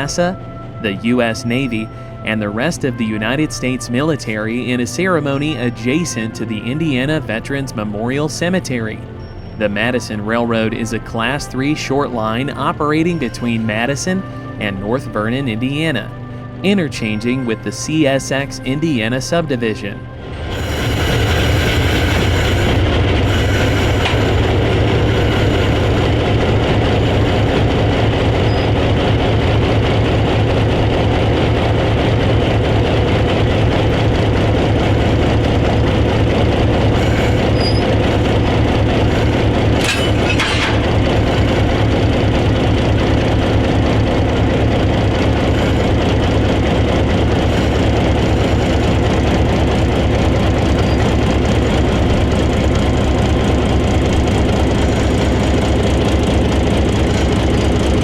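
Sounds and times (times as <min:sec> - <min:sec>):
diesel locomotive engine drone: 0:00.0 - 0:58.0.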